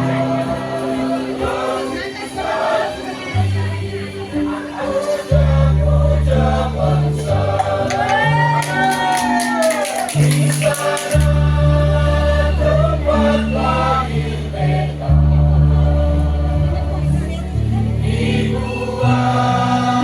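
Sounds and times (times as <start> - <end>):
choir singing: 0.0 - 20.0
sustained low bass notes: 5.3 - 8.6, 11.2 - 20.0.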